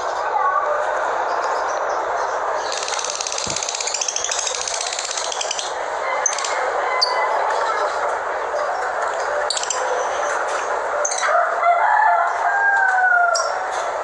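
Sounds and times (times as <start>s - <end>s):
small birds trilling and chirping: 0.0s - 14.0s.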